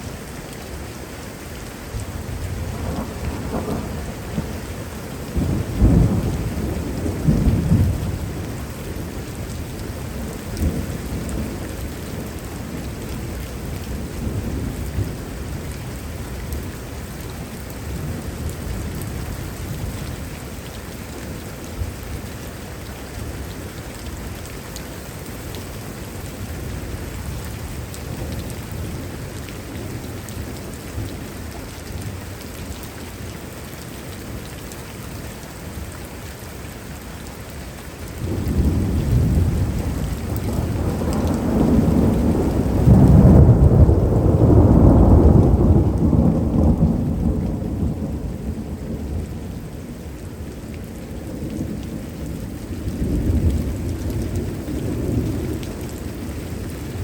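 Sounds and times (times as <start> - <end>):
heavy rain falling: 0.0 - 57.0
rolling thunder: 5.2 - 8.4, 38.2 - 49.7.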